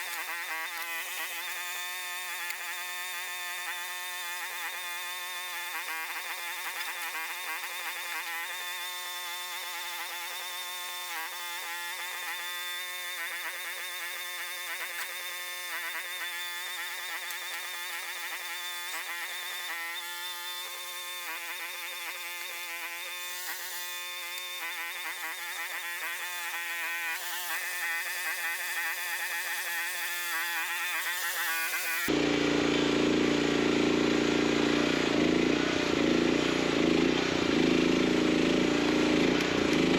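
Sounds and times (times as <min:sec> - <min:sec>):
drone propellers buzzing: 0:30.4 - 0:39.9.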